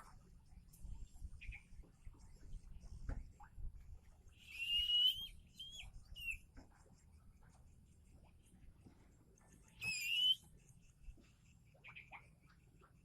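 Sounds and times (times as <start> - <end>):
faint scratching and rustling: 5.9 - 9.8.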